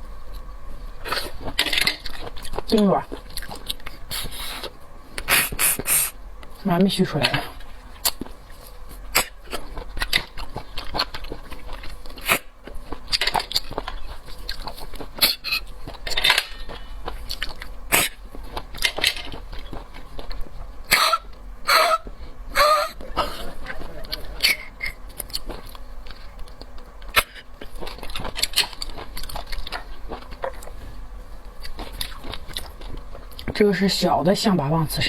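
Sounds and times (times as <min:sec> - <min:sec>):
noisy mouth bursts: 0:05.3 - 0:06.2, 0:20.9 - 0:23.3.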